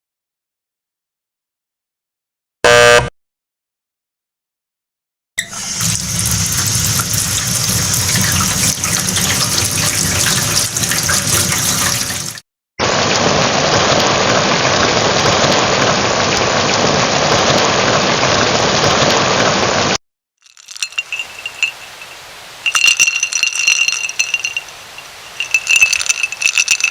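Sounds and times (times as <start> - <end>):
food frying in a pan: 5.4 - 12.4
kitchen faucet running: 5.4 - 12.4.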